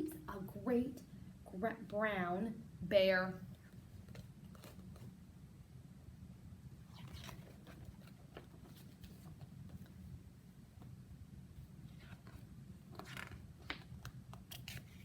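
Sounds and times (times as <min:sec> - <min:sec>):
low room hum: 0:00.0 - 0:15.0
book pages turning: 0:03.9 - 0:05.2, 0:06.9 - 0:10.0, 0:11.9 - 0:15.0.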